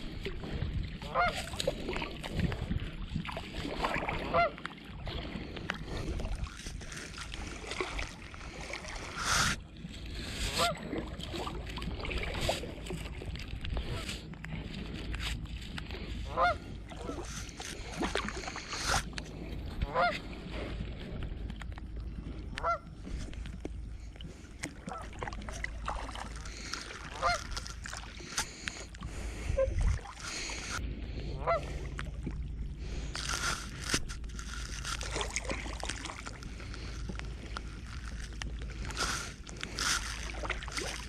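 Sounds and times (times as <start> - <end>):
water: 0.0 - 41.0
goose honking: 1.1 - 1.4, 4.3 - 4.6, 16.3 - 17.2, 27.1 - 27.6, 31.4 - 31.7.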